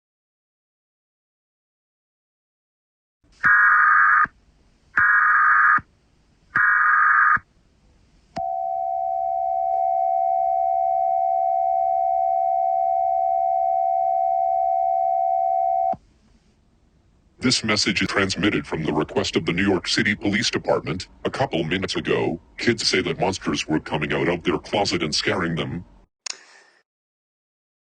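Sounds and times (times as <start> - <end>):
steady attention tone: 8.4 - 16.0.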